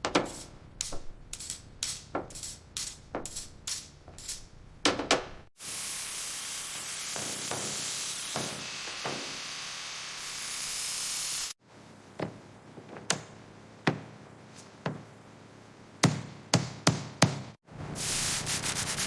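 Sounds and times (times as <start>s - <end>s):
workshop noise hiss: 5.6s - 11.6s, 17.7s - 19.0s.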